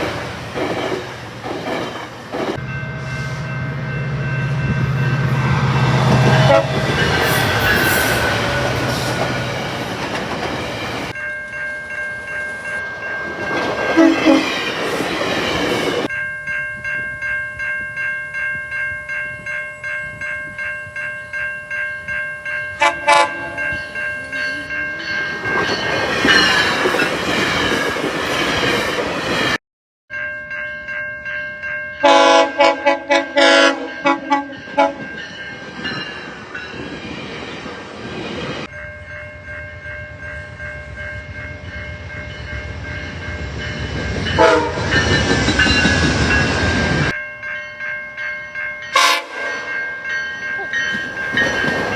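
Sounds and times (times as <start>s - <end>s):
wheels clattering on rail joints: 0.0s - 2.6s, 5.6s - 11.2s, 12.8s - 16.1s, 49.6s - 51.9s
rush of passing train cars: 0.0s - 29.6s, 32.0s - 51.9s
locomotive air horn: 6.3s - 9.2s, 13.9s - 14.5s, 22.8s - 23.7s, 32.0s - 35.0s, 44.4s - 44.8s, 49.0s - 49.7s.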